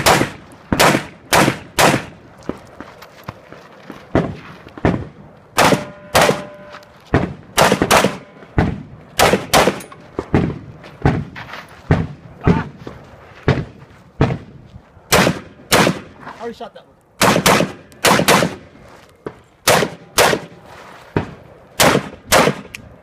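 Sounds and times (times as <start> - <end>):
gunshots with echo: 0.0 - 2.2, 5.6 - 9.8, 17.2 - 18.6, 19.6 - 20.6
steel target ringing: 5.7 - 6.9.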